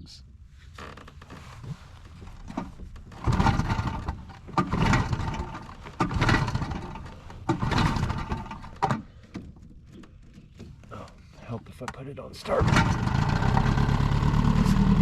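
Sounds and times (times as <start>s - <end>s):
outboard motor rope pulls: 2.2s - 11.3s, 12.5s - 15.0s.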